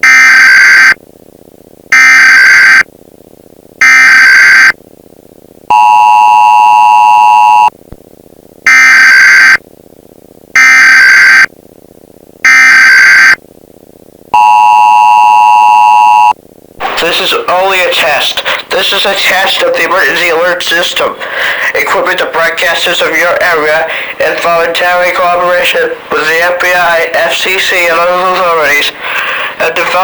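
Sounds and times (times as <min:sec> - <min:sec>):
two-tone attention signal: 0:05.7 - 0:07.7, 0:14.4 - 0:16.4.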